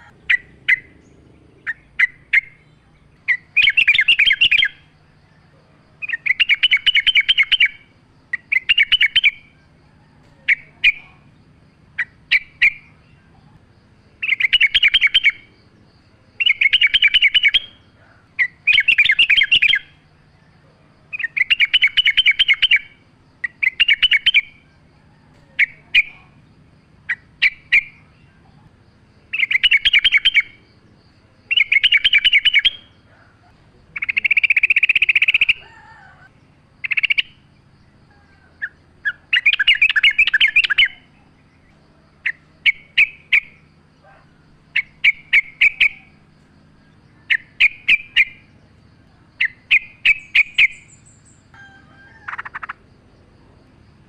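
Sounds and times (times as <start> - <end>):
bulbul singing bubbly phrases: 33.8 - 35.7.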